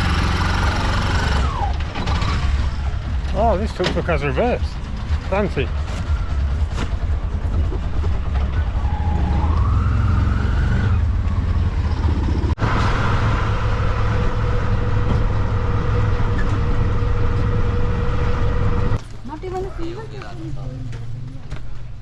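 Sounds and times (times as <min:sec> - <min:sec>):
auto-rickshaw engine whine: 0:00.0 - 0:22.0.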